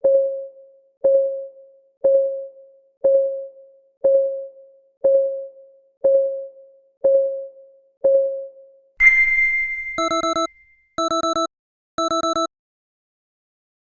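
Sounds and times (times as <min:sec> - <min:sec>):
bell-like ding: 0:09.0 - 0:10.6
clock ticking: 0:10.0 - 0:12.5
rapid electronic alarm beeps: 0:10.0 - 0:12.5.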